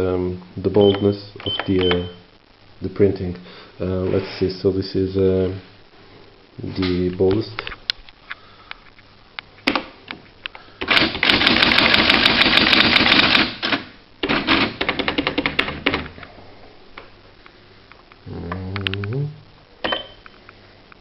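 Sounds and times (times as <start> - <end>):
electronic typewriter printing: 10.8 - 16.1.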